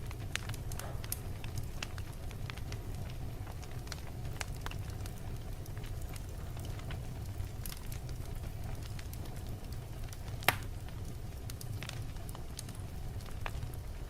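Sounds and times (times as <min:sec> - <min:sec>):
fire rumbling and crackling: 0:00.0 - 0:14.0
loud pop from fire: 0:00.3 - 0:02.0, 0:10.4 - 0:10.7.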